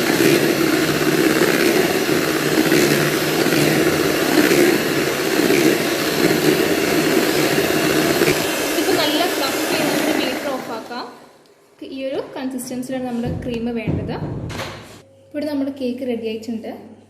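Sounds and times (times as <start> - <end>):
electric beater whipping cream: 0.0 - 11.1.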